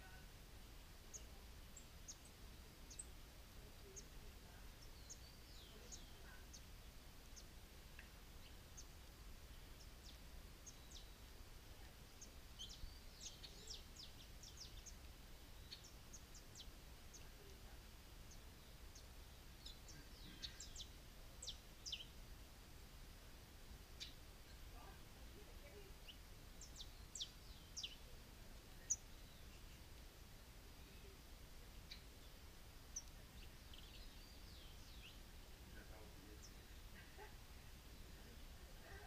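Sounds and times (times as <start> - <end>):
birds chirping faintly: 0.0 - 39.0.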